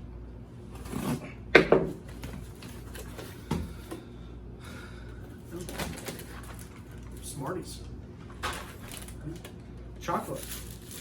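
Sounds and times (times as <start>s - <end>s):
snack packaging crinkling: 5.5s - 7.3s, 8.4s - 11.0s.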